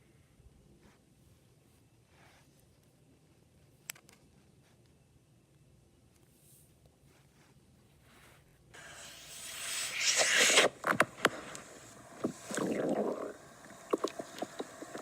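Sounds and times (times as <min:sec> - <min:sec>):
stomach growling: 0:08.9 - 0:15.0.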